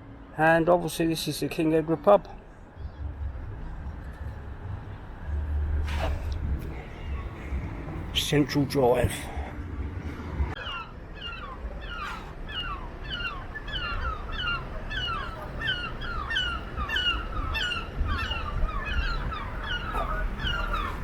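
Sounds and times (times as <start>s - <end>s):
low rumble: 2.4s - 14.8s
birds calling in short notes: 10.6s - 21.0s.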